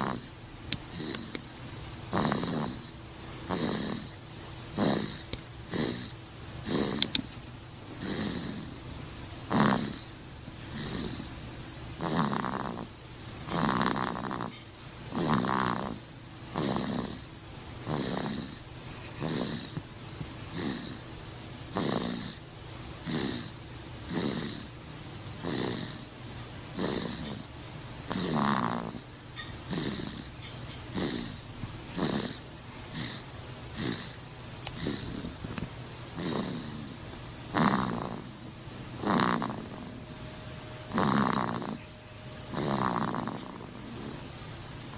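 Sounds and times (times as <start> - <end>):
snoring with high whistle: 0.0 - 0.3, 2.1 - 2.9, 3.5 - 4.2, 4.8 - 7.1, 8.0 - 8.8, 9.5 - 11.3, 12.0 - 12.9, 13.5 - 18.6, 19.2 - 19.8, 20.5 - 21.0, 21.7 - 22.4, 23.0 - 23.5, 24.1 - 24.7, 25.4 - 26.1, 26.8 - 27.5, 28.1 - 31.4, 32.0 - 33.2, 33.8 - 34.2, 36.2 - 44.5.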